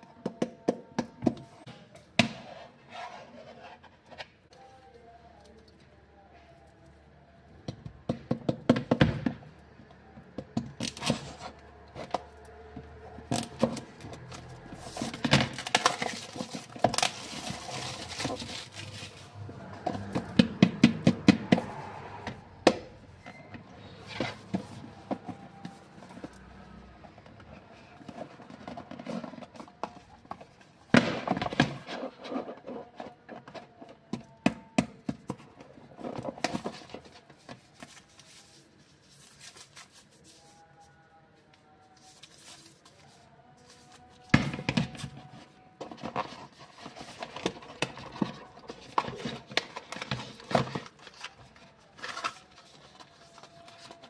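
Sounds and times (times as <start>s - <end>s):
packaging rustling and scraping: 10.8s - 22.4s, 23.2s - 34.4s, 35.1s - 41.2s, 41.8s - 54.0s.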